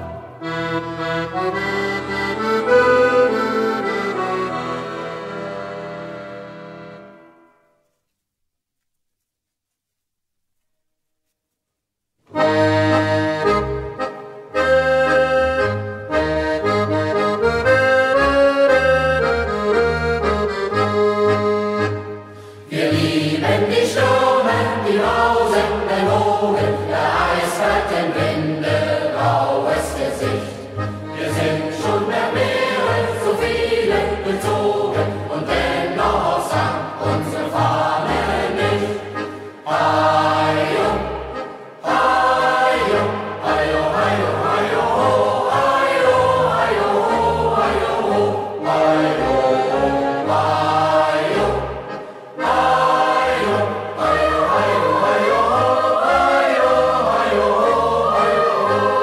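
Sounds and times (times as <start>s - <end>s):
instrumental held chords: 12.3s - 59.0s
youth choir singing in unison: 22.6s - 59.0s.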